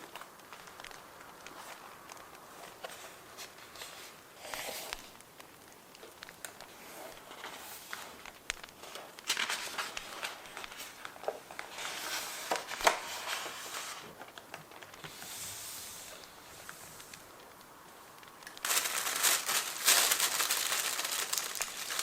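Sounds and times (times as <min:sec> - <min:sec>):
paper rustling and crinkling: 0:00.0 - 0:22.0
small clicks: 0:04.5 - 0:11.7.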